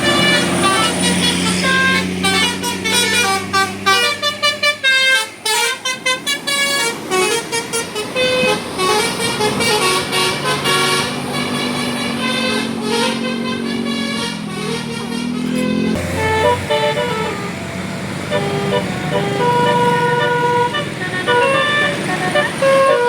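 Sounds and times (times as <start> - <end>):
bus horn playing a tune: 0.0 - 23.0.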